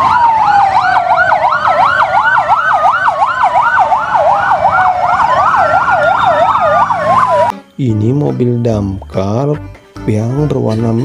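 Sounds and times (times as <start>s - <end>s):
siren wail: 0.0s - 7.5s
toy siren warbling yelp: 0.0s - 7.5s.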